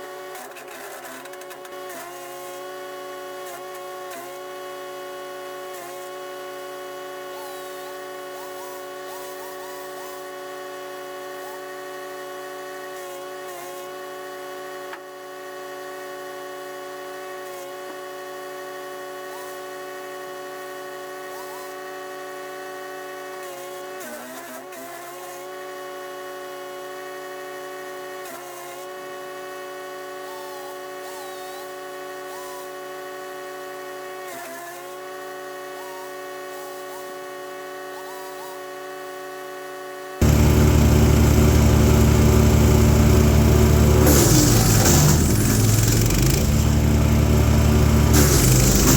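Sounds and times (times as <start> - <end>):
branches grinding through blades: 40.2 - 48.9
wood chipper engine running: 40.2 - 48.9.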